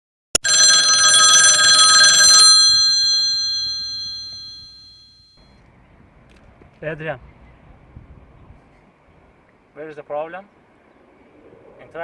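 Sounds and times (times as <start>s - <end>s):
telephone bell ringing: 0.4s - 5.4s.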